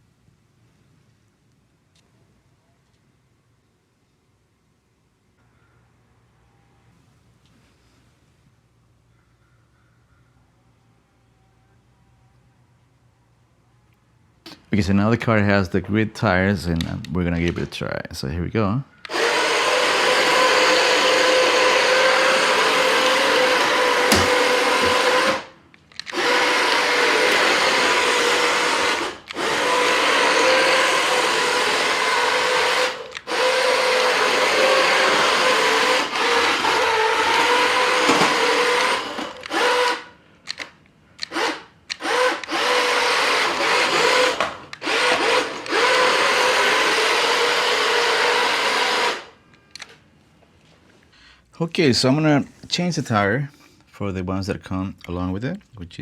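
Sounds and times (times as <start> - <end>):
toy car electric motor whining: 19.0 - 40.6, 41.2 - 49.4.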